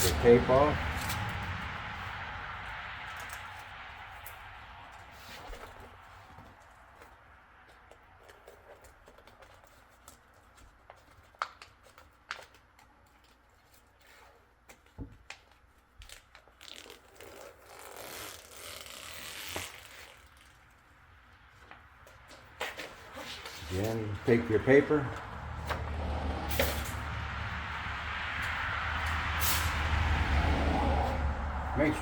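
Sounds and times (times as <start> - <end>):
tape peeling: 6.9 - 20.8
paper crinkling: 7.8 - 20.6.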